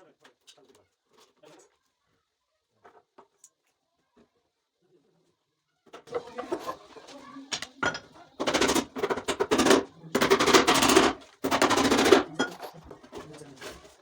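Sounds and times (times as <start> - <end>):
power tool rattling on wood: 7.5 - 14.0.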